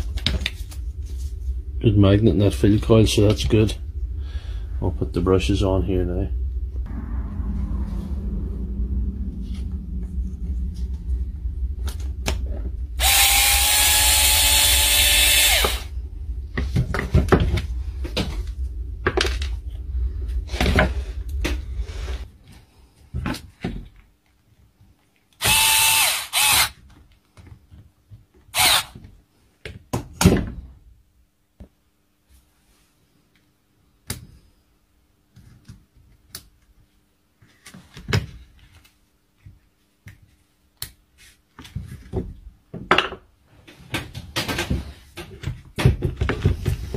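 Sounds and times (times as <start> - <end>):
low hum: 0.0 - 23.1
power tool motor whirring: 13.0 - 15.9, 25.4 - 26.7, 28.6 - 29.0.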